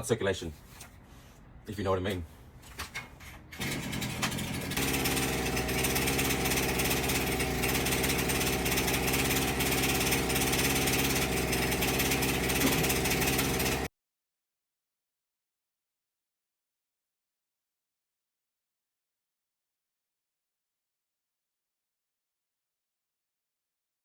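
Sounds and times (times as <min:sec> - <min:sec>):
pole chainsaw engine running: 0:03.6 - 0:13.9.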